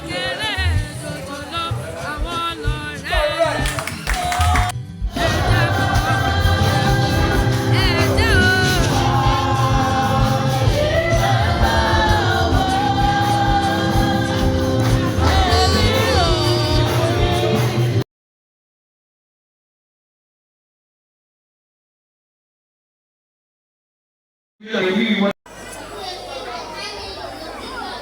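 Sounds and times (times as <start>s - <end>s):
song with singing over a beat: 0.0s - 18.0s.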